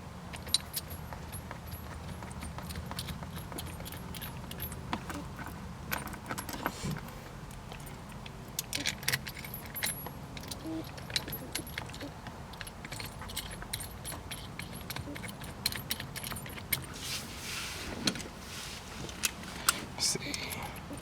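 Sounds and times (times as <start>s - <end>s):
metal bolts and washers clinking: 0.3s - 17.2s.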